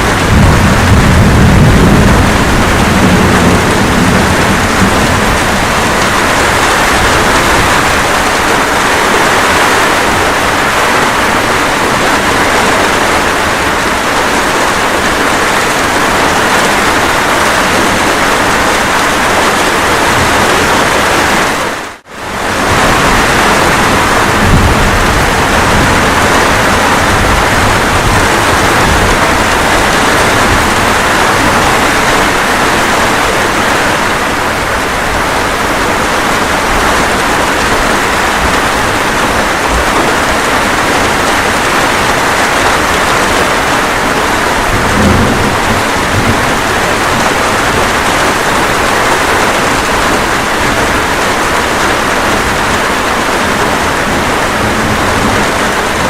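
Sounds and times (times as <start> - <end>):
low rumble of thunder: 0.0 - 8.3, 22.4 - 42.0, 43.4 - 48.9
heavy rain: 0.0 - 56.0.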